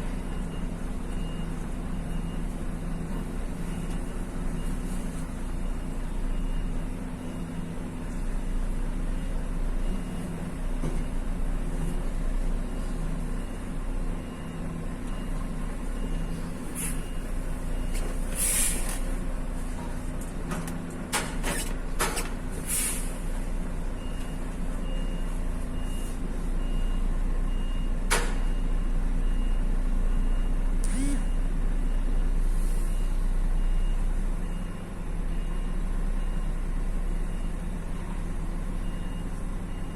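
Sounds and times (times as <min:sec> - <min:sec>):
short hisses: 0:18.4 - 0:19.0, 0:22.7 - 0:23.2.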